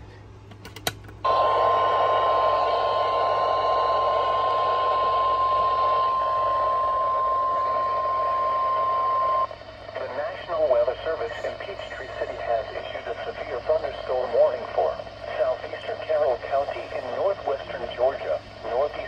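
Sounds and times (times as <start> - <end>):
loud high alarm tone: 1.2 - 10.0
radio static: 1.3 - 19.0.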